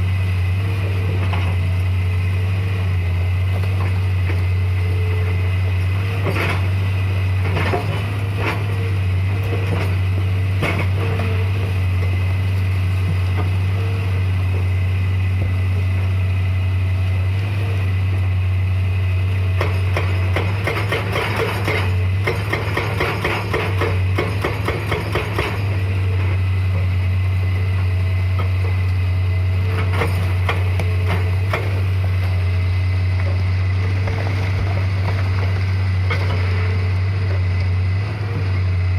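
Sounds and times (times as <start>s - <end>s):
excavator diesel engine running: 0.0s - 38.9s
hydraulic breaker hammering: 19.6s - 25.8s.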